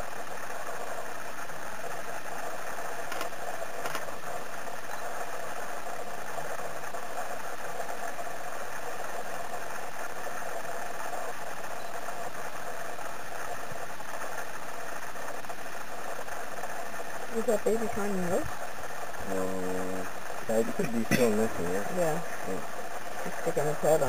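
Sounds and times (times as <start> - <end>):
mechanical hum with hiss: 0.0 - 24.0
faint clicks: 3.1 - 4.1.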